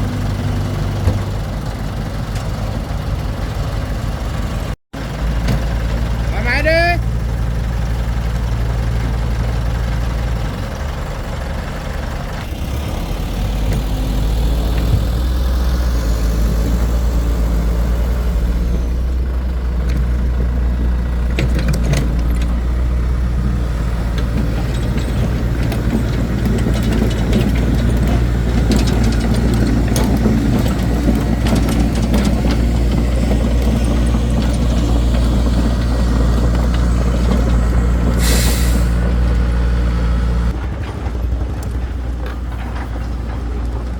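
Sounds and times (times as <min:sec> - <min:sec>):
excavator engine running: 0:00.0 - 0:43.9
knocks and clanks: 0:19.8 - 0:22.8, 0:23.4 - 0:38.2, 0:40.5 - 0:43.9.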